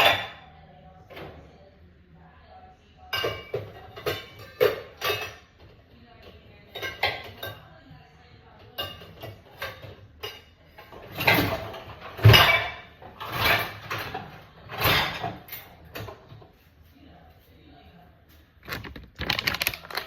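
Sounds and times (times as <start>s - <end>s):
dishes rattling into dishwasher: 0.0s - 0.5s, 3.1s - 7.7s, 8.6s - 16.4s
dishwasher racks sliding: 10.9s - 16.3s.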